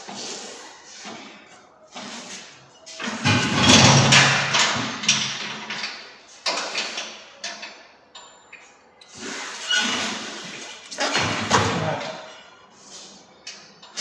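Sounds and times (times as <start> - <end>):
tyres scraping and shuffling: 0.0 - 7.6, 8.6 - 14.0
tyres thudding: 10.9 - 12.4.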